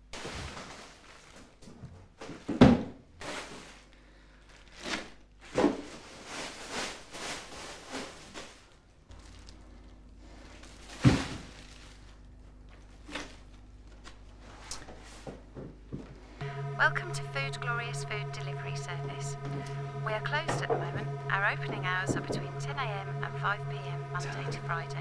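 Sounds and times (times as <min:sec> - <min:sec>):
rustling: 0:00.0 - 0:02.5, 0:03.2 - 0:15.2.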